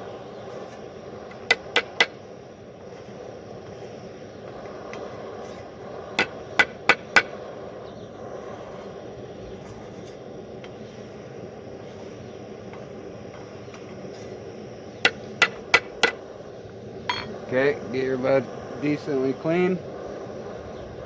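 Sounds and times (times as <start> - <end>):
steady rushing noise: 0.0 - 21.0
metal spoon tapping a pot: 17.1 - 17.3.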